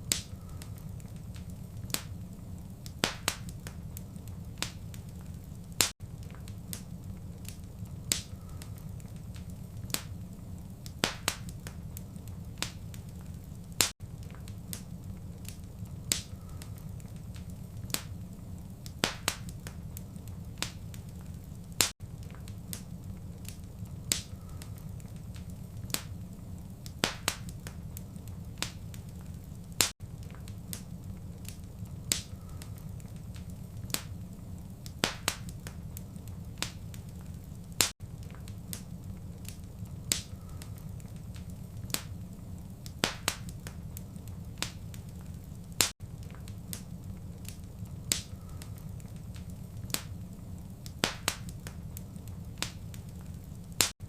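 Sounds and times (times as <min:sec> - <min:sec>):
fireplace fire crackling: 0:00.0 - 0:54.0.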